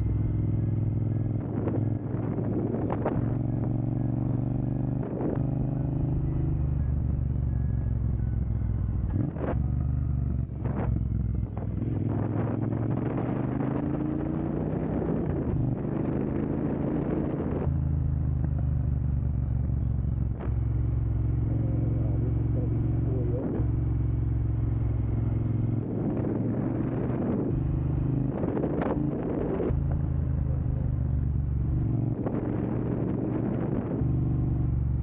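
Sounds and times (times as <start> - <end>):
motorcycle engine running: 0.0 - 35.0.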